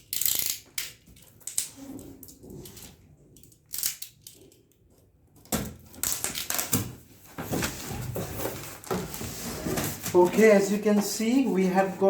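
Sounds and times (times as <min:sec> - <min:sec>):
packaging crinkling and rustling: 0:05.9 - 0:10.6.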